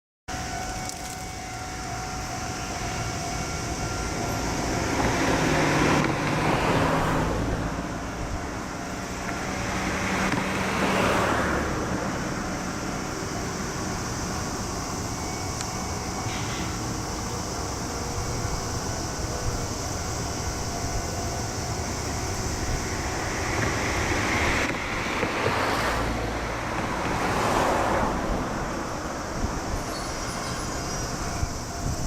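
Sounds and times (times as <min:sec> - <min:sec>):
road vehicles passing: 0:00.3 - 0:32.0
traffic background: 0:00.3 - 0:32.0.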